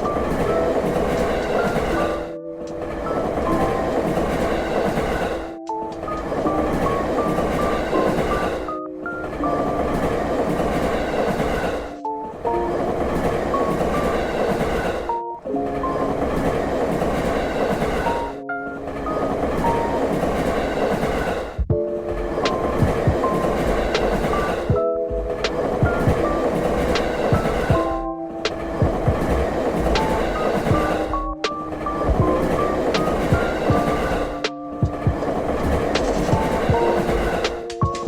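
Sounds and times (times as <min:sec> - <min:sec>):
train rumbling on rails: 0:00.0 - 0:38.0.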